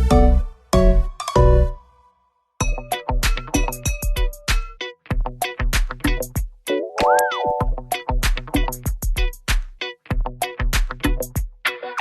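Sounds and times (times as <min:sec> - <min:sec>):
upbeat background music: 0:00.0 - 0:01.9, 0:02.6 - 0:04.8, 0:05.4 - 0:09.7.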